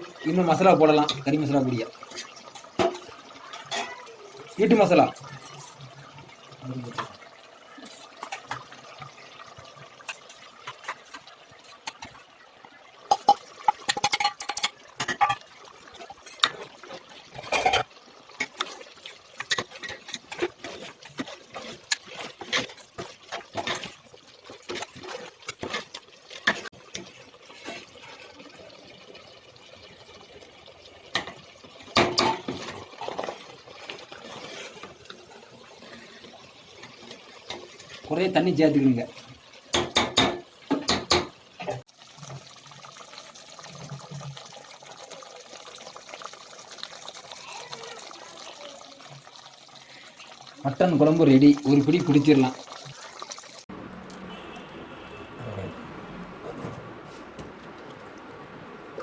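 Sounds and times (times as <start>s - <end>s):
utensil scraping a pot: 34.1s - 35.0s, 54.1s - 58.0s
liquid sloshing: 51.4s - 59.0s.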